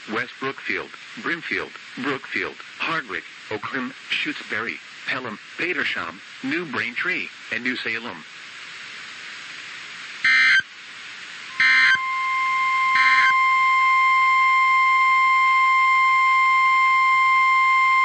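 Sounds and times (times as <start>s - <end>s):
buzzy digital data bursts: 10.2s - 10.7s, 11.5s - 16.1s
steady alarm tone: 10.2s - 10.7s, 11.5s - 18.0s.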